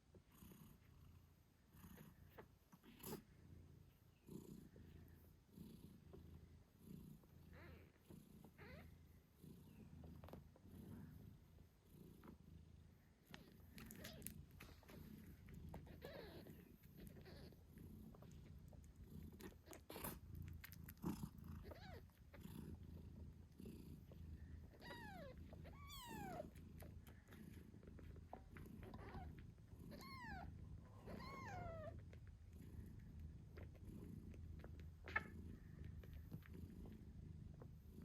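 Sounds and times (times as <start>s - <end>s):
cat purring: 0.0s - 38.0s
kittens squeaking: 13.4s - 14.7s, 15.7s - 18.3s, 21.6s - 22.4s, 24.7s - 26.5s, 28.8s - 32.1s.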